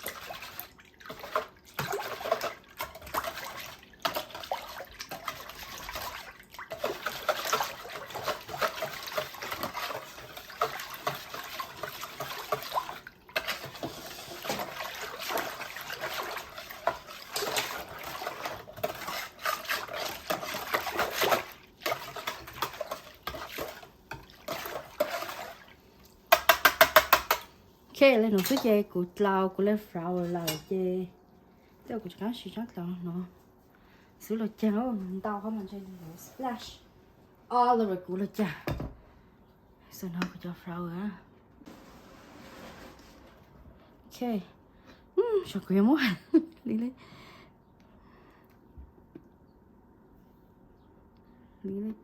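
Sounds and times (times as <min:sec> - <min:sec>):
batter stirred and splashing in bowl: 0:00.0 - 0:27.5.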